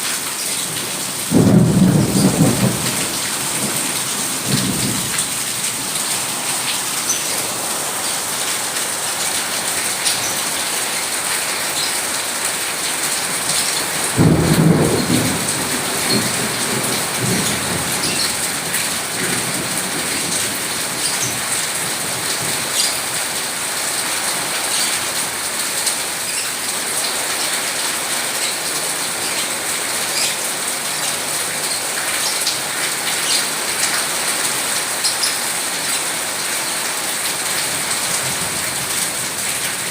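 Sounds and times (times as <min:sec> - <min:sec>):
steady rain falling: 0:00.0 - 0:39.9
thunder clap rumbling: 0:01.3 - 0:06.3, 0:14.1 - 0:20.5.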